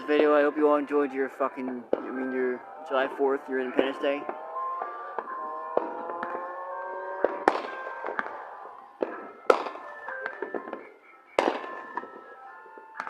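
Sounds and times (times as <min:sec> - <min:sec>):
steady musical tones: 0:00.0 - 0:13.0
fireworks bangs and crackles: 0:01.7 - 0:02.4, 0:03.7 - 0:13.0.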